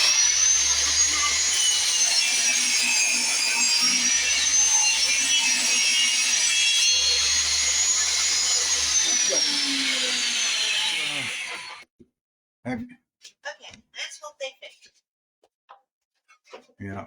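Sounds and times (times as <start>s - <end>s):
power saw cutting wood: 0.0s - 11.8s.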